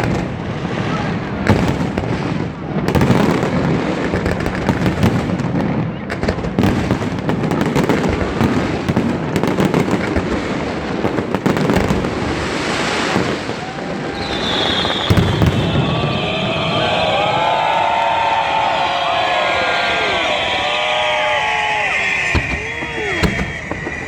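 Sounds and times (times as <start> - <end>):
fireworks bangs and crackling: 0.0 - 24.0
crowd cheering and whistling: 12.9 - 24.0.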